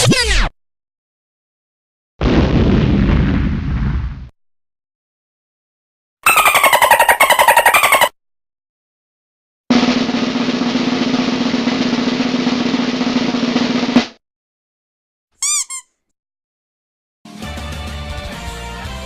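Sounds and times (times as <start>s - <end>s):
high-pitched chirps: 6.2s - 8.1s, 15.4s - 15.9s
music: 9.7s - 14.2s, 17.3s - 19.0s
snare drum roll: 9.7s - 14.2s.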